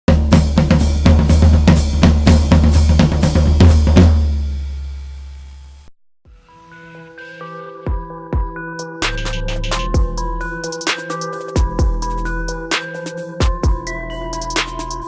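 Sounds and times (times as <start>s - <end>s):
drum beat with heavy bass: 0.1s - 4.8s, 7.9s - 15.0s.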